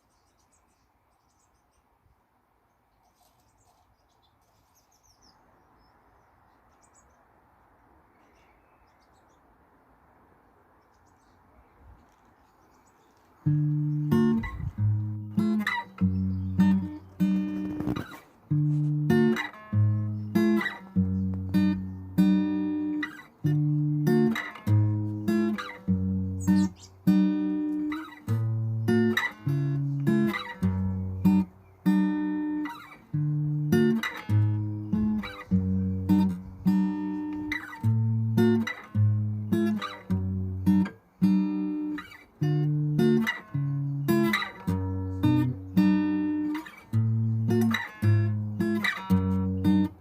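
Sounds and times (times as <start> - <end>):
acoustic guitar strumming chords: 13.5 - 50.0.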